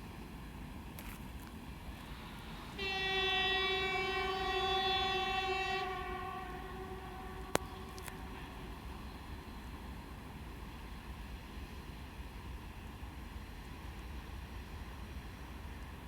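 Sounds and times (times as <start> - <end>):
locomotive horn blast: 2.2 - 9.3.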